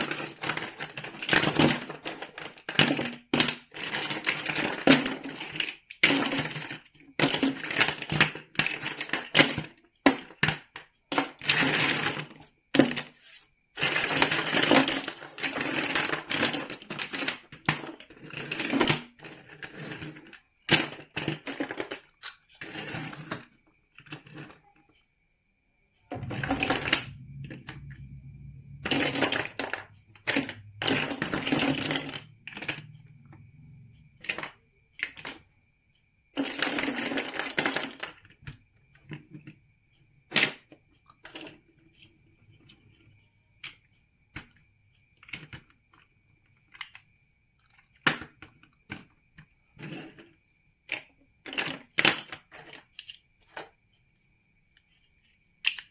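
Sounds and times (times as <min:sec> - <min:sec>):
faint low hum: 0:25.9 - 0:35.5
plastic bricks clicking together: 0:55.6 - 0:55.9.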